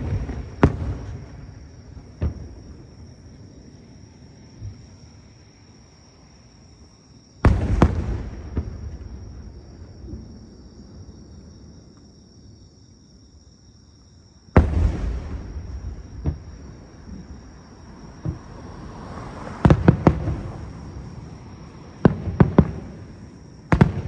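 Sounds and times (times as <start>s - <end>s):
small firework pops: 0.0s - 1.5s, 2.1s - 2.6s, 7.4s - 10.4s, 14.6s - 17.3s, 18.2s - 20.7s, 22.0s - 23.1s, 23.7s - 24.0s
fireworks booming: 0.0s - 3.3s, 7.4s - 11.5s, 14.5s - 24.0s.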